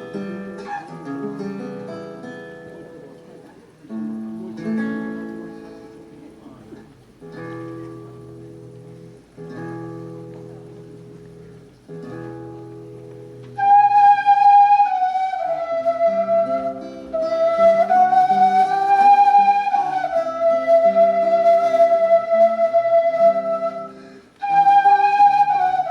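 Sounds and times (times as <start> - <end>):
flute melody: 0.0 - 3.1, 12.0 - 25.9.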